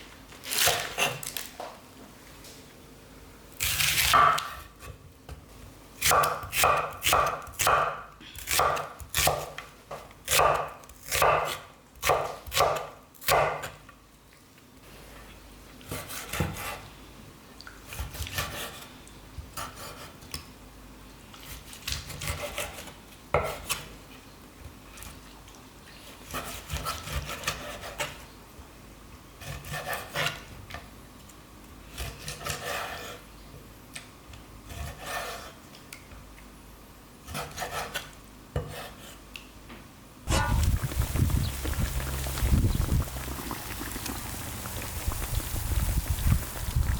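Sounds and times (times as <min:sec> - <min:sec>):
hands rubbing and scraping food: 0:40.3 - 0:46.9.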